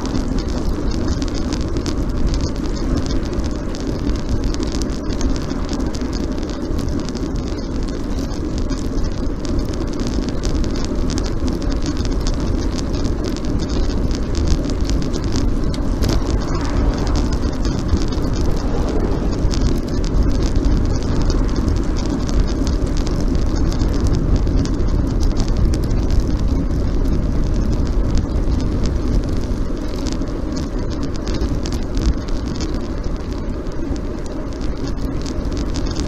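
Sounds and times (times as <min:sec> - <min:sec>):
wind rush: 0:00.0 - 0:07.3, 0:12.7 - 0:30.0
bicycle tyre noise on road: 0:00.0 - 0:36.0
fine crackle: 0:00.0 - 0:36.0.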